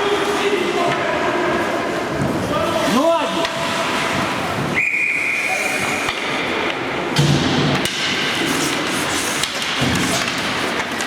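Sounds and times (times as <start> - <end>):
sharp knocks of hockey play: 6.0 - 11.0.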